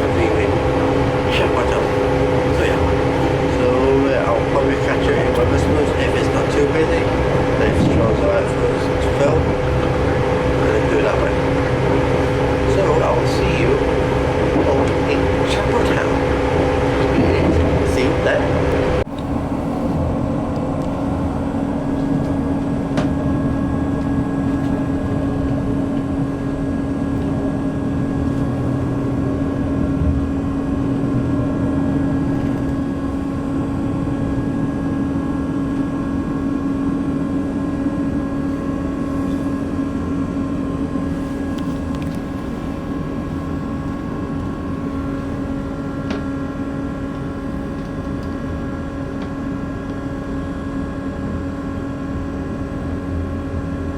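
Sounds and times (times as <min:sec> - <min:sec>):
diesel train hum: 0:00.0 - 0:53.9
low running rumble: 0:00.0 - 0:53.9.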